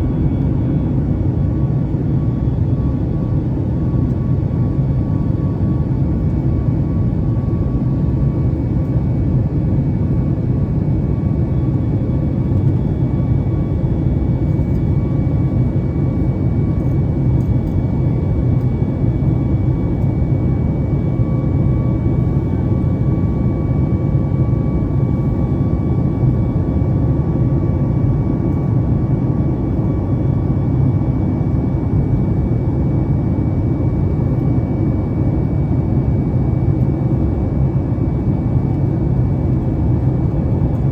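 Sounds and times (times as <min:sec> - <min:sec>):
jet engine cabin rumble: 0:00.0 - 0:40.9.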